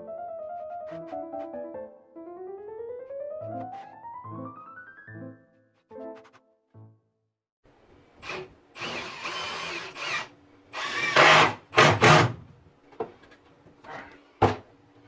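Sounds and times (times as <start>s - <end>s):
power drill drilling into wood: 8.2s - 12.4s.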